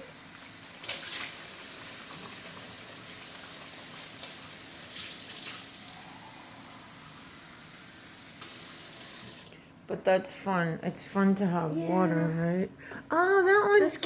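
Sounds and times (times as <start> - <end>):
tap water running into container: 0.2 - 5.8, 8.3 - 9.5.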